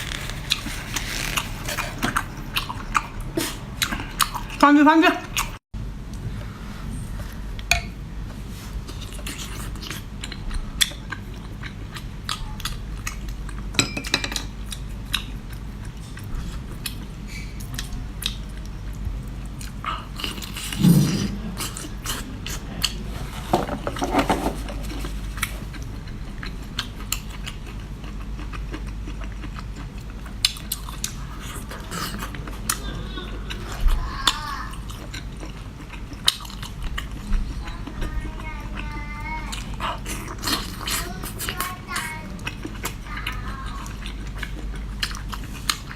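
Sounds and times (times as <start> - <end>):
chewing and biting: 25.0 - 34.0, 34.7 - 45.9.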